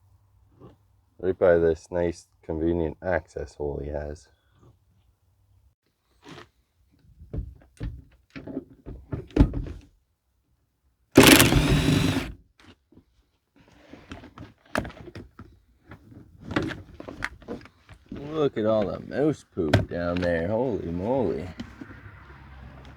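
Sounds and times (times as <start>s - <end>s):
clicks: 11.2s - 12.3s
loud rasping burst: 11.2s - 12.3s.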